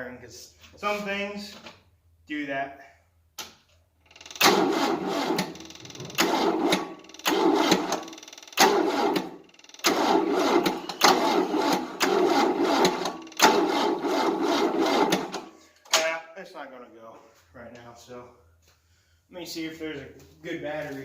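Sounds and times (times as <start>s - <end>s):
starter motor cranking engine: 4.0s - 15.6s.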